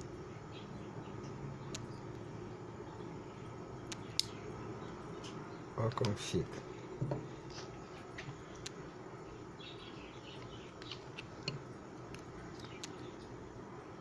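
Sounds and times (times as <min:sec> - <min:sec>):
low steady hum: 0:00.0 - 0:14.0
small sharp clicks: 0:01.7 - 0:02.2, 0:03.9 - 0:04.4, 0:10.4 - 0:13.1.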